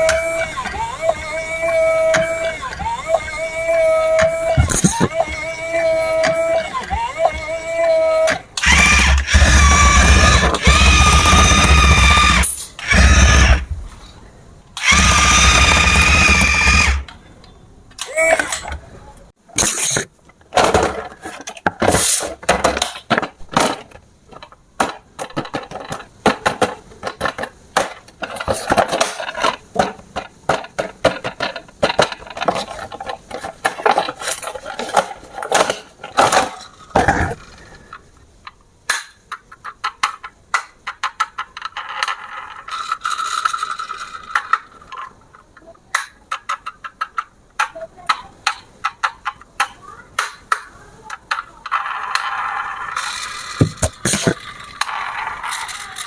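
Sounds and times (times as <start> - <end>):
toy electric motors whirring: 0.0 - 13.8, 14.8 - 17.1, 19.6 - 20.1, 21.8 - 22.4, 41.8 - 45.1, 51.3 - 56.0.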